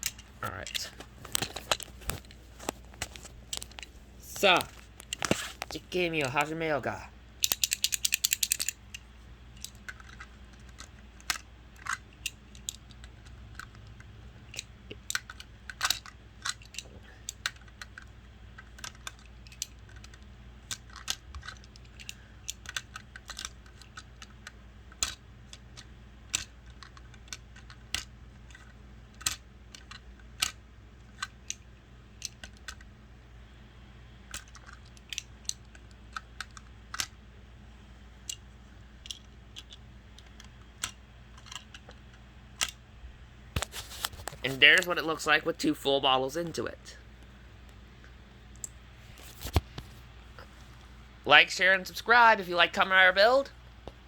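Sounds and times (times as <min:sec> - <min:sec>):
rattle of rapid clicks: 0:07.4 - 0:09.0
plastic bricks clicking and clattering: 0:07.4 - 0:32.9, 0:34.3 - 0:37.2, 0:38.2 - 0:42.8.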